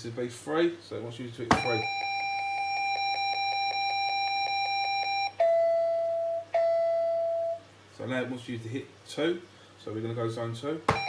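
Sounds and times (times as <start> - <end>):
long low beeps: 1.6 - 7.6.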